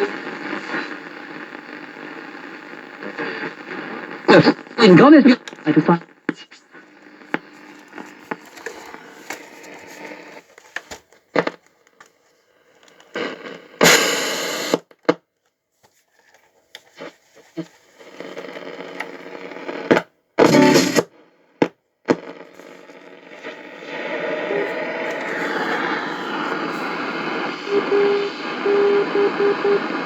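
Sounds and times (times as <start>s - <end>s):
radio static hiss and crackle: 0.0s - 11.6s, 12.4s - 14.9s, 16.9s - 21.3s, 22.0s - 30.0s
radio clicks: 7.0s - 10.2s
loud burst of noise: 20.5s - 21.0s.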